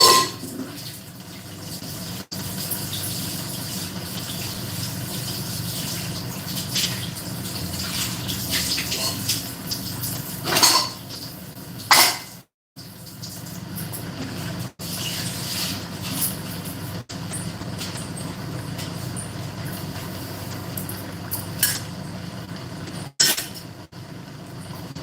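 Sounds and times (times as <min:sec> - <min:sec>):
pots and utensils clinking: 0:00.0 - 0:00.9, 0:07.9 - 0:11.2, 0:11.9 - 0:12.4, 0:20.5 - 0:22.0, 0:23.0 - 0:23.7
kitchen background hum: 0:00.0 - 0:25.0.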